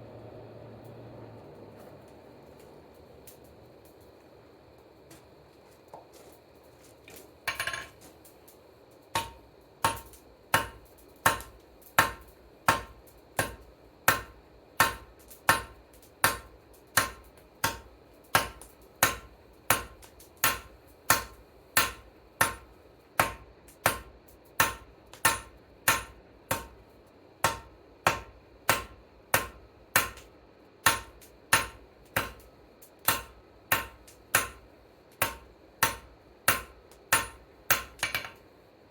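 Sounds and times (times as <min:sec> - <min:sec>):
hammer striking steel on anvil: 0:09.2 - 0:22.6, 0:23.2 - 0:26.8, 0:27.4 - 0:30.2, 0:30.8 - 0:32.4, 0:33.0 - 0:34.6, 0:35.2 - 0:38.4.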